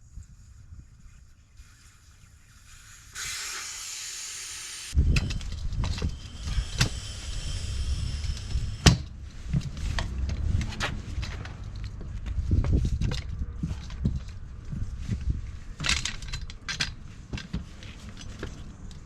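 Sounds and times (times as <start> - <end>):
steady hiss: 1.6 - 9.0
parts and tools clattering: 15.1 - 19.0.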